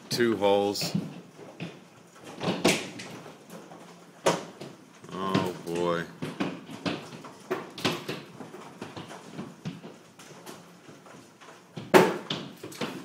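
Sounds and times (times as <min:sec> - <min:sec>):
hailstones knocking on roof: 0:04.2 - 0:10.5.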